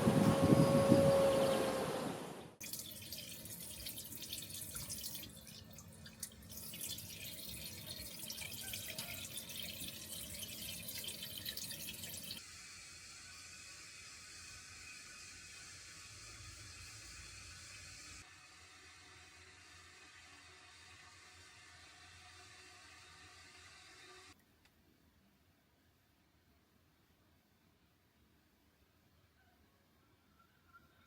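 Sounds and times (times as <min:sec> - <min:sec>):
water trickling and dripping: 0:02.6 - 0:12.4.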